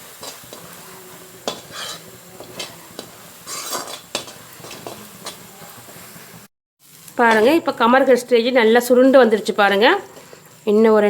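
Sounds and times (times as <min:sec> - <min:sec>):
spatula scraping and knocking a pan: 0:00.0 - 0:06.5
faint sizzle: 0:00.0 - 0:11.0.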